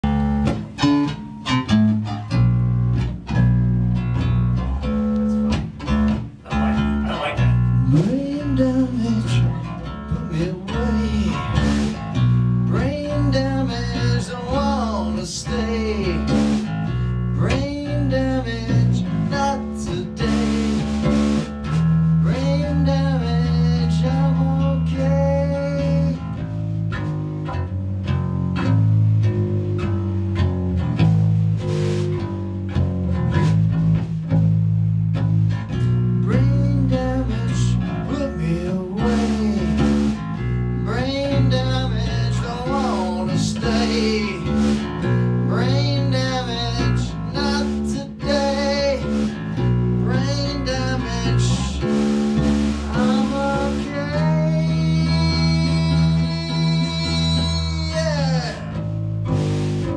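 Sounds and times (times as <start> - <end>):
slow band guitar and bass: 0.0 - 59.9
man singing: 6.5 - 16.6, 17.4 - 21.1, 22.2 - 26.4, 36.2 - 49.4, 50.0 - 58.9.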